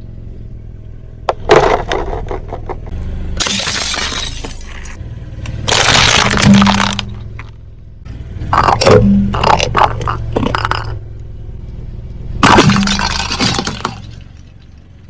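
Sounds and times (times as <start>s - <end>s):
low hum: 0.0s - 15.0s
car tyre crushing brittle objects: 3.4s - 7.6s, 8.6s - 11.0s, 12.4s - 15.0s.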